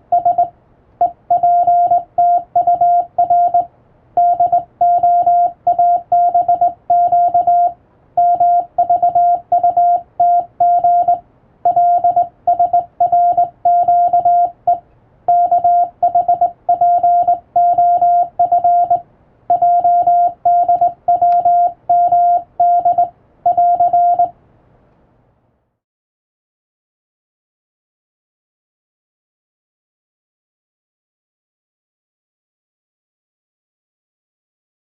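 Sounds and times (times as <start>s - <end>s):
morse code beeps: 0.1s - 24.3s.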